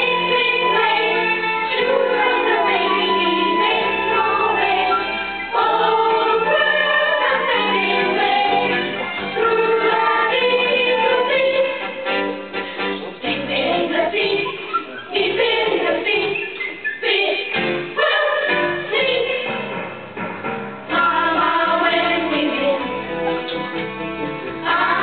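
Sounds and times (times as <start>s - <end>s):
group of voices singing: 0.0s - 12.2s, 13.0s - 19.6s, 20.9s - 23.2s, 24.5s - 25.0s.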